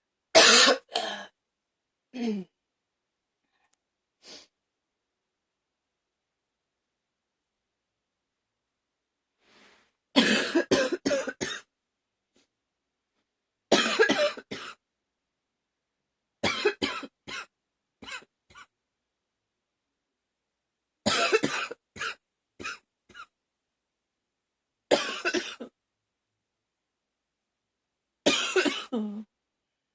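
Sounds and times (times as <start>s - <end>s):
woman coughing: 0.4s - 1.3s, 10.2s - 11.7s, 13.7s - 14.8s, 16.4s - 17.5s, 21.1s - 23.3s, 24.9s - 25.7s, 28.3s - 29.3s.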